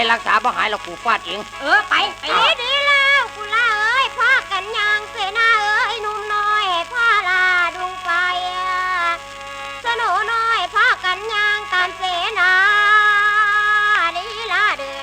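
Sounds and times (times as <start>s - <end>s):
mouth organ drone: 0.0s - 3.3s
person singing ornamented lines: 0.0s - 15.0s.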